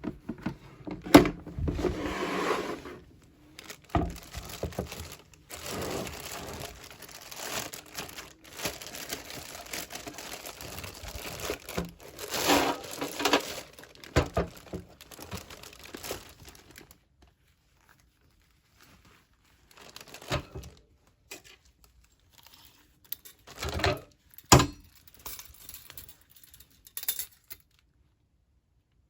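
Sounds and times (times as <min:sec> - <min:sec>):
packaging crinkling and tearing: 0:03.4 - 0:20.9.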